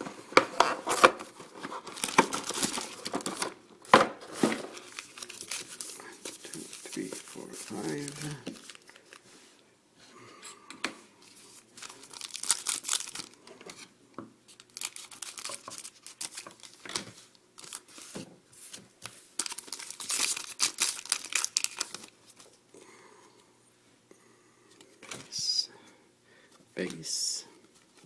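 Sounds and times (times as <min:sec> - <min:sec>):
card pack wrappers crinkling: 0:00.8 - 0:03.6, 0:04.2 - 0:09.2, 0:11.3 - 0:13.8, 0:14.5 - 0:18.2, 0:19.0 - 0:22.6.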